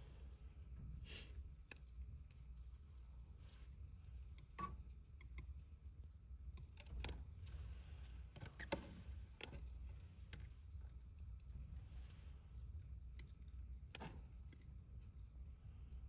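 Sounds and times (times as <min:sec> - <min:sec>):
faint small clicks and taps: 0:01.6 - 0:03.1, 0:04.0 - 0:05.7, 0:06.5 - 0:07.6, 0:13.2 - 0:15.3.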